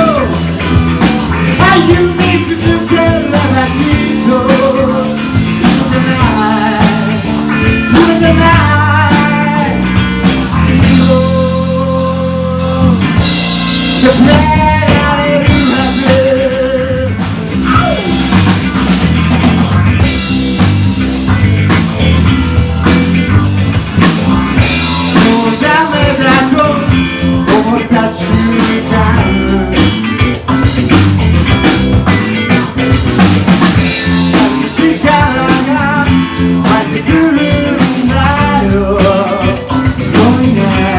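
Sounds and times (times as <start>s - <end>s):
person singing: 0.0s - 0.5s, 1.5s - 18.3s, 25.0s - 30.1s, 34.0s - 40.9s
drums: 0.0s - 40.9s
guitar: 0.0s - 40.9s.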